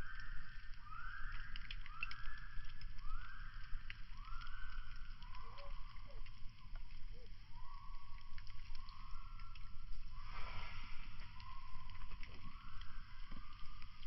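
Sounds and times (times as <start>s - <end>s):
fire crackles and pops: 0.0s - 14.0s
fire rumbling: 0.0s - 14.0s.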